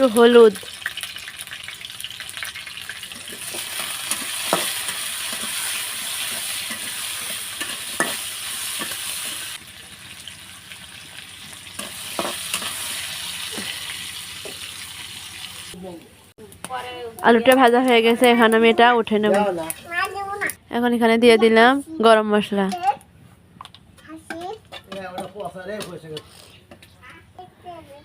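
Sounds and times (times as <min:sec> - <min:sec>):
potatoes sizzling in hot oil: 0:00.0 - 0:15.8.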